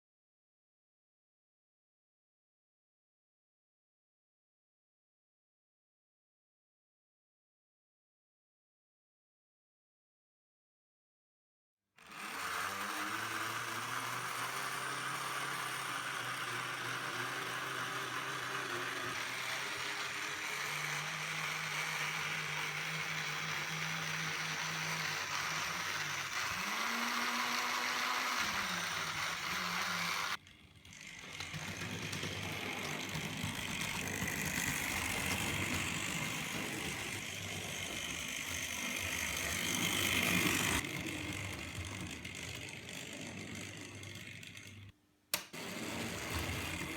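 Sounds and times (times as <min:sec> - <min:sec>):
model train motor hum: 0:12.0 - 0:46.9
rattle of wheels and gears: 0:12.1 - 0:45.0, 0:45.6 - 0:46.9.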